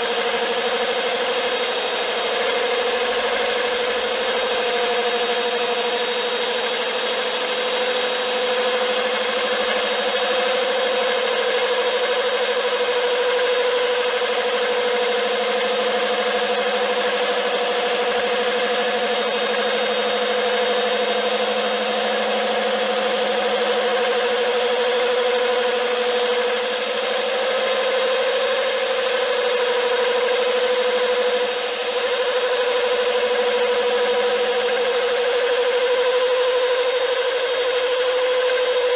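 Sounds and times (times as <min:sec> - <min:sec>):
core drill boring through tile: 0:00.0 - 0:38.9.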